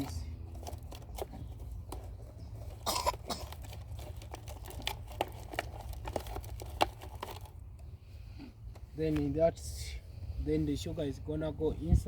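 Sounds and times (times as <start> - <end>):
plastic bottle rustling: 0.0 - 7.9.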